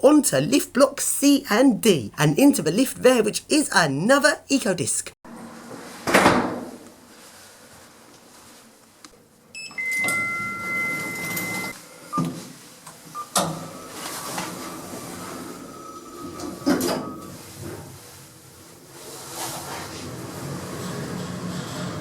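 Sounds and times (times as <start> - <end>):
sliding doors: 9.9 - 22.0.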